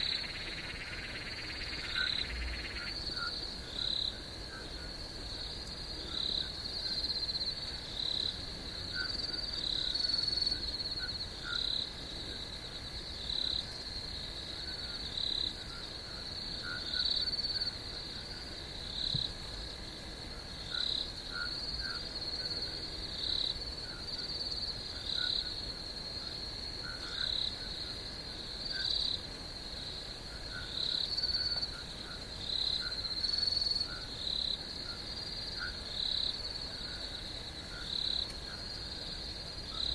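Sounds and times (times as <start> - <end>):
insects high trill: 0.0 - 4.1.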